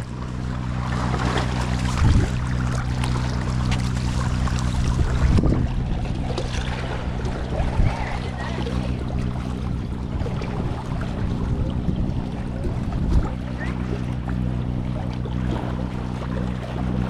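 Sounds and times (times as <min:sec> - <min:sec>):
low motor hum: 0:00.0 - 0:17.0
wind: 0:00.0 - 0:17.0.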